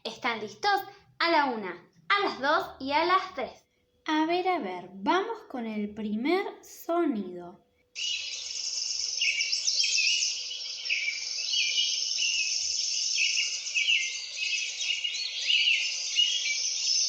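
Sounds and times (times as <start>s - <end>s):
songbirds chirping: 8.0s - 17.0s.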